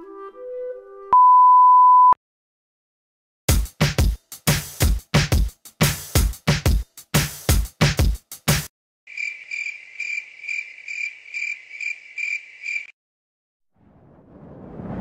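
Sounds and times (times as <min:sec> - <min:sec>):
electronic music with a beat: 0:03.5 - 0:08.7
cricket chirping: 0:09.1 - 0:13.0
low rumbling noise: 0:13.8 - 0:15.0.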